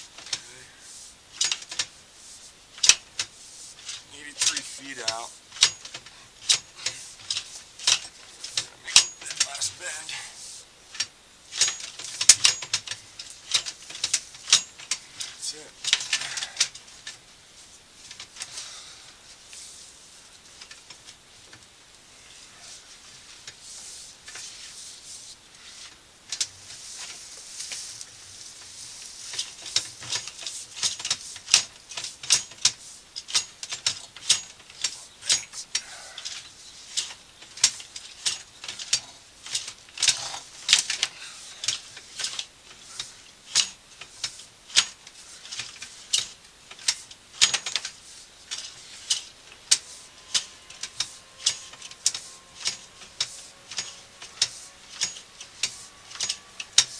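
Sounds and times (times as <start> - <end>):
cable clicking and scraping in pipe: 22.7 - 56.9.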